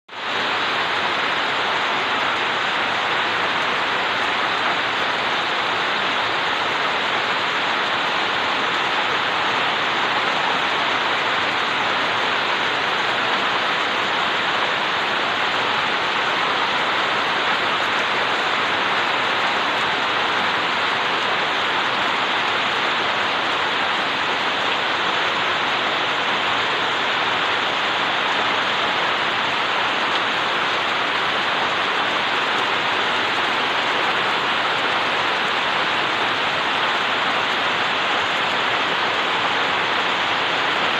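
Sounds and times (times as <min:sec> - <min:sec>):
steady rain falling: 0:00.1 - 0:40.9.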